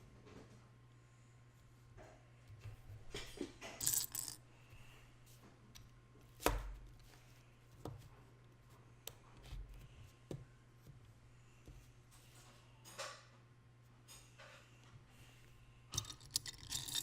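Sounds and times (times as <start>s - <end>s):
plastic pieces rattling: 3.8s - 4.4s, 16.0s - 17.0s.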